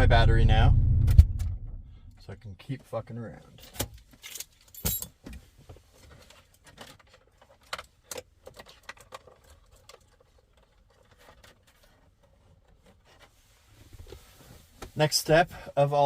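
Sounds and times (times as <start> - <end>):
light clicks and small rattles: 6.0 - 13.0.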